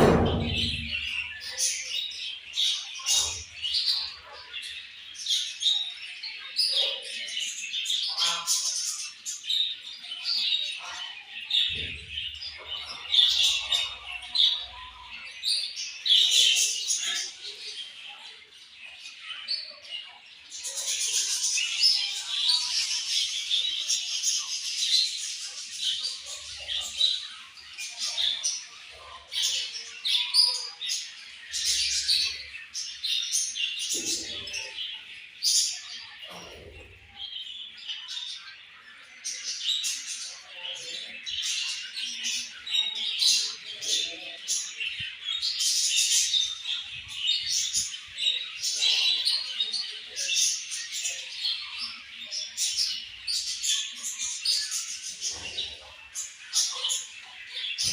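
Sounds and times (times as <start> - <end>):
budgerigars chirping and chattering: 0.0 - 57.9.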